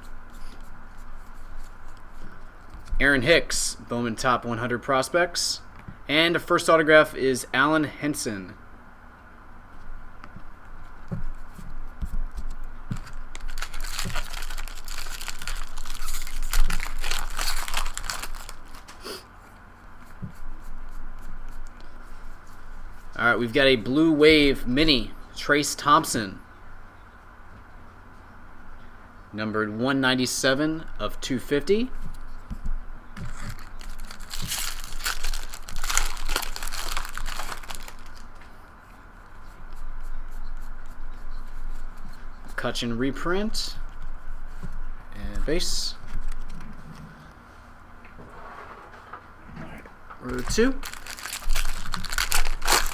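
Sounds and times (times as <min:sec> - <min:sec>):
plastic packaging rustling: 0:12.9 - 0:19.0, 0:33.2 - 0:38.4, 0:50.2 - 0:52.9
wrapper tearing and crinkling: 0:12.9 - 0:19.0, 0:33.3 - 0:38.3, 0:50.3 - 0:52.9.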